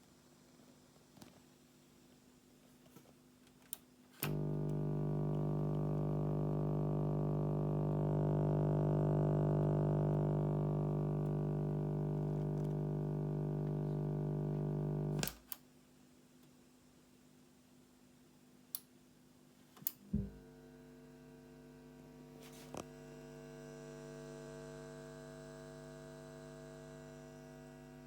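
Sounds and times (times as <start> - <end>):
buzzy mains hum: 4.3 - 15.3, 20.2 - 28.0.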